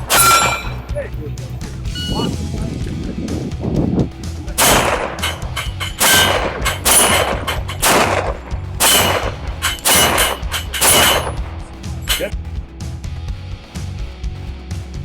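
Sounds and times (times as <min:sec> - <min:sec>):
loud pistol shots: 0:04.6 - 0:12.3.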